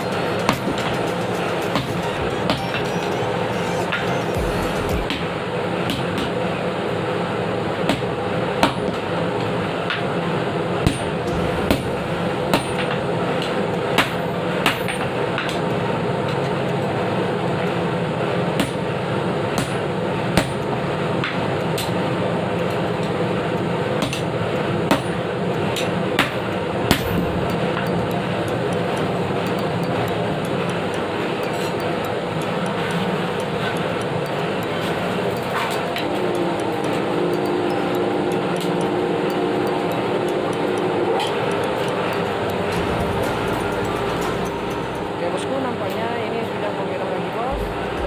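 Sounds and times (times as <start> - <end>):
hammer striking metal: 0.0 - 6.4, 10.8 - 16.5, 18.6 - 18.9, 19.6 - 22.0, 24.0 - 45.2, 47.5 - 48.0
steady hum: 0.0 - 48.0.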